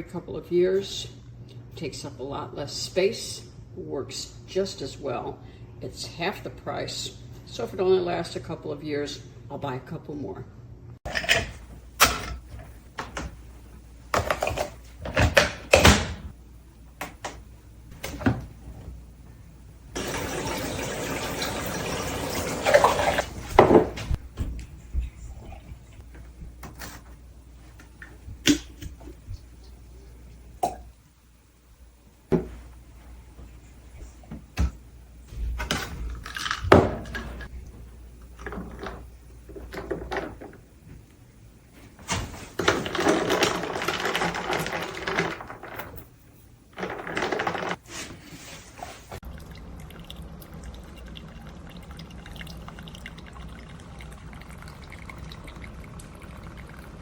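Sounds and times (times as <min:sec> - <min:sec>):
coffee maker humming: 0:11.0 - 0:30.8, 0:32.0 - 0:46.1, 0:46.7 - 0:48.0, 0:49.2 - 0:57.0
running and pouring water: 0:19.9 - 0:23.6, 0:49.2 - 0:57.0
faint water trickle: 0:49.2 - 0:57.0.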